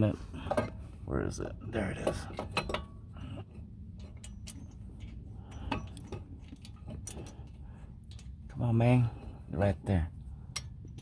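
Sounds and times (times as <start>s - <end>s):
small metal hardware clinking: 1.9s - 3.1s, 3.9s - 8.6s, 10.5s - 11.0s.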